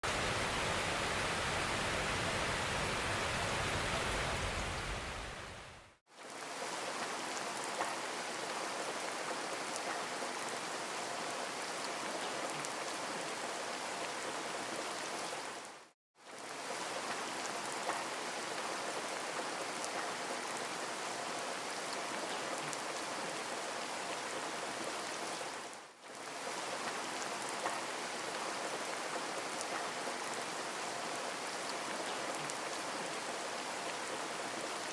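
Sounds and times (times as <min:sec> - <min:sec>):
rushing water hiss: 0:00.0 - 0:15.6.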